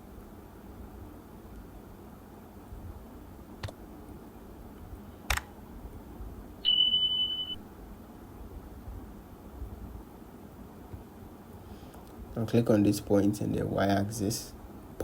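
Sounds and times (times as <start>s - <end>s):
high-pitched electronic beep: 6.6s - 7.6s.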